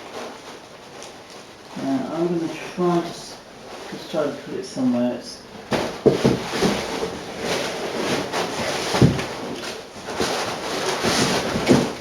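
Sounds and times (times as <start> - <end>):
clutter rustling and scraping: 0.0 - 12.0
knocks of clutter: 5.6 - 12.0.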